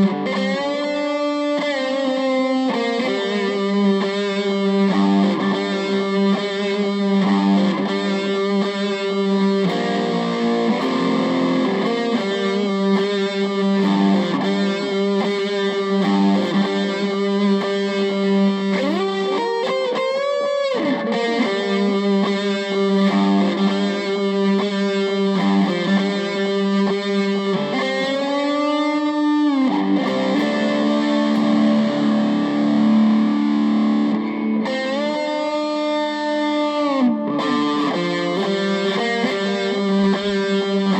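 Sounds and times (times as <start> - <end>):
distorted electric guitar: 0.0 - 40.9.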